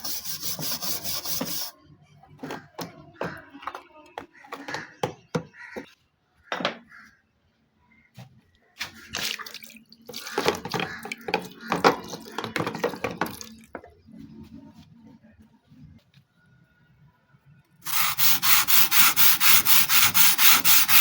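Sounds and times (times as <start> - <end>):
water splashing and dripping: 9.0 - 13.7.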